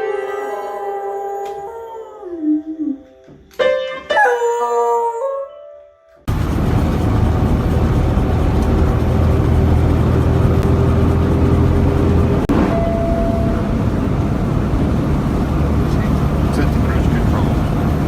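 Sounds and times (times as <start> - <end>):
motor vehicle rumbling: 6.3 - 18.0
brief higher-pitched tone: 12.5 - 14.1.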